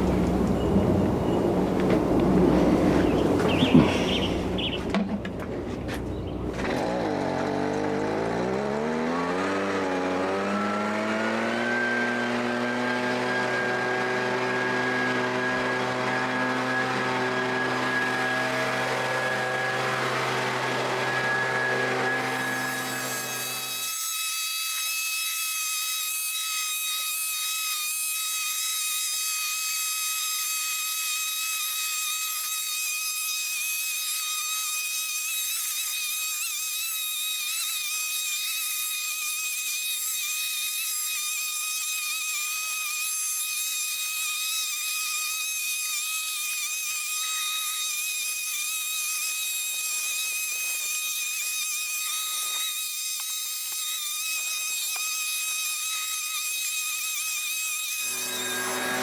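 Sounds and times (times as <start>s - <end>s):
leaf blower running: 0.0s - 23.9s, 58.0s - 59.0s.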